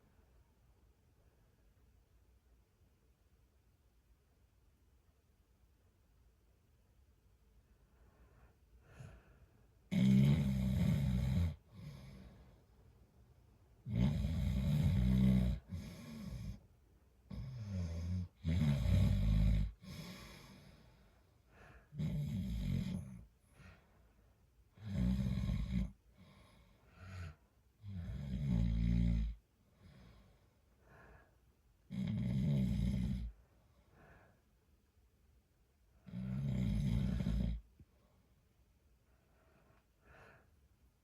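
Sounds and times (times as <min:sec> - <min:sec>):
man snoring: 0:09.9 - 0:12.3, 0:13.9 - 0:16.6, 0:17.3 - 0:20.6, 0:21.9 - 0:23.2, 0:24.8 - 0:26.0, 0:27.0 - 0:29.4, 0:31.9 - 0:33.3, 0:36.1 - 0:37.6.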